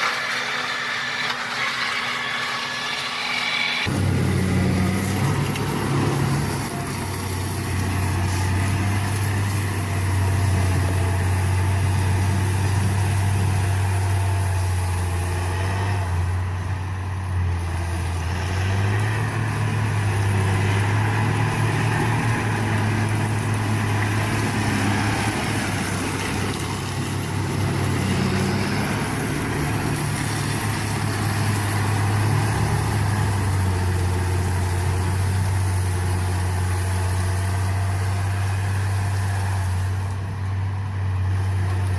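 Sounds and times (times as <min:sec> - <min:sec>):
clearing machine engine droning: 0:00.0 - 0:41.9.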